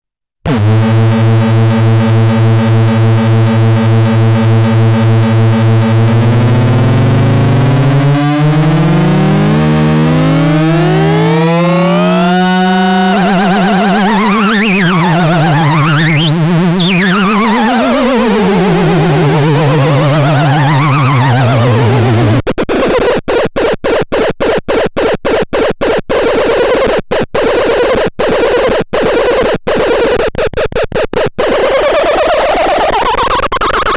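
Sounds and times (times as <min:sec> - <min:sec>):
buzzy synthesizer drone: 0:00.5 - 0:22.5.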